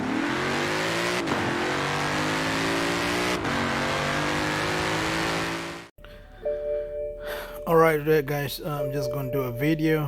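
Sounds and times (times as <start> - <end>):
car engine accelerating: 0.0 - 5.9.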